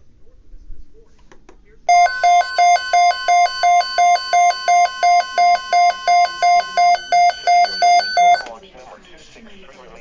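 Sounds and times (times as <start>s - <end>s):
alternating electronic alert tone: 1.9s - 8.5s.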